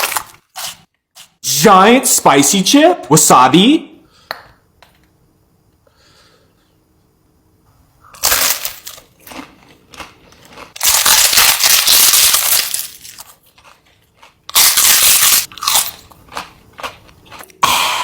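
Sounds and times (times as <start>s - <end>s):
chip being crunched: 8.2s - 13.9s, 14.5s - 16.1s.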